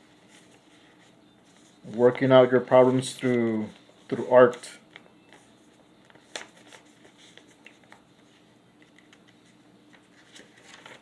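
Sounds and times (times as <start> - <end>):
paper rustling: 5.3 - 11.0.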